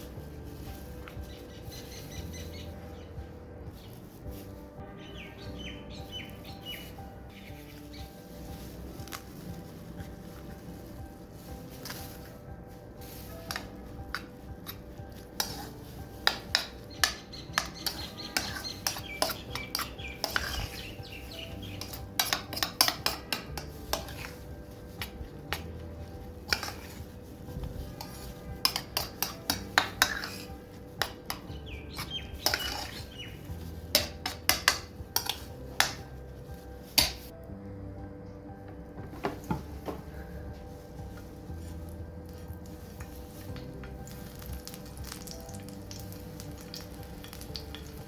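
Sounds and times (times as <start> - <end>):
metal utensil scraping a pot: 13.5 - 24.5, 26.4 - 27.2, 27.8 - 36.2.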